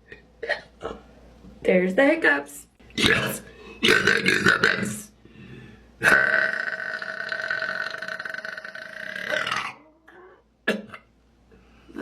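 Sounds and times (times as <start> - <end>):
long burp: 3.0 - 4.9, 6.0 - 11.1.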